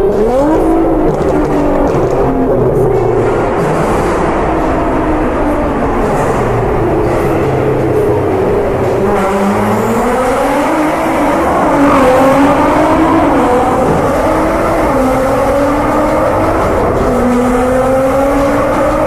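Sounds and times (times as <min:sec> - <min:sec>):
sports car engine accelerating: 0:00.0 - 0:19.0.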